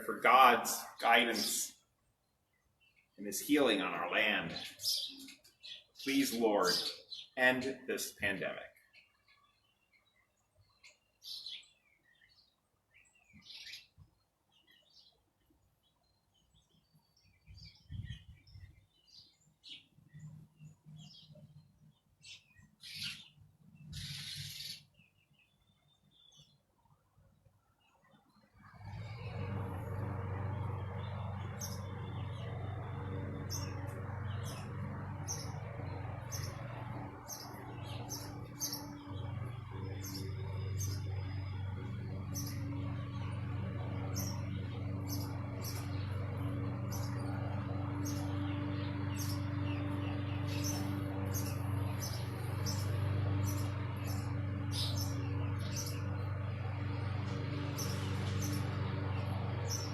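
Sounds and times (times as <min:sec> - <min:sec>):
small songbirds chirping: 0:00.0 - 0:59.9
steady low hum: 0:28.6 - 0:59.9.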